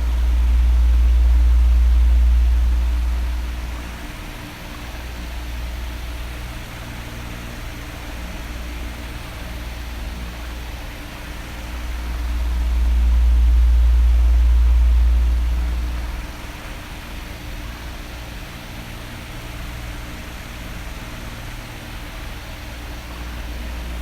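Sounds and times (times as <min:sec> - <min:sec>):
deep low rumble: 0:00.0 - 0:04.0, 0:11.5 - 0:16.8
electric fan running: 0:00.0 - 0:24.0.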